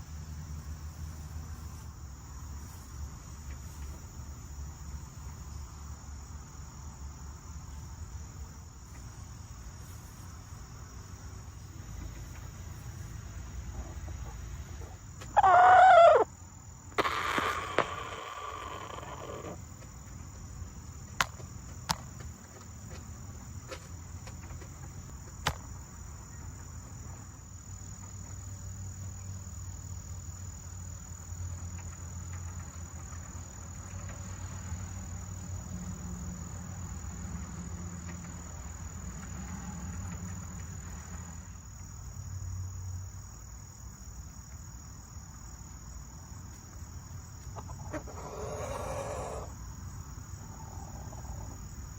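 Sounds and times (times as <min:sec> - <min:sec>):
crickets chirping: 0:00.0 - 0:51.9
sharp clicks: 0:17.0 - 0:19.2.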